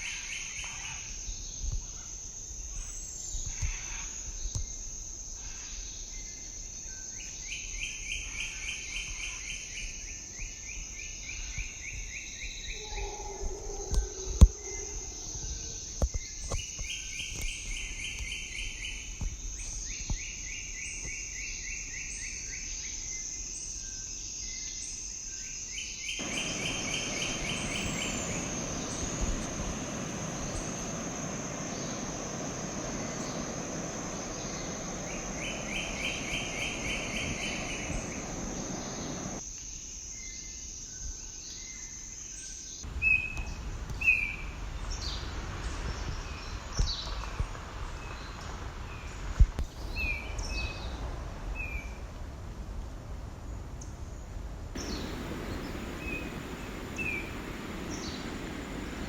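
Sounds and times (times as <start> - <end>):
insects droning: 0.0 - 59.0
bird chirps: 26.1 - 39.4
steady rushing noise: 26.2 - 39.4, 54.8 - 59.0.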